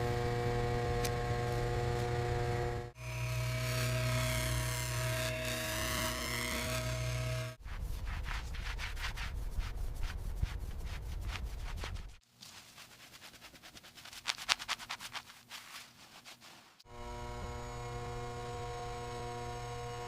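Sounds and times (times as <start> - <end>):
steady machine drone: 0.0 - 7.6, 16.9 - 20.0
quick rubbing strokes: 7.6 - 16.8.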